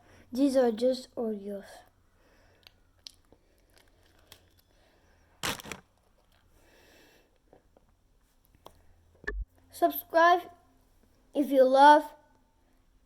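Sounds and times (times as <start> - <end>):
cookie crunch: 5.4 - 6.5.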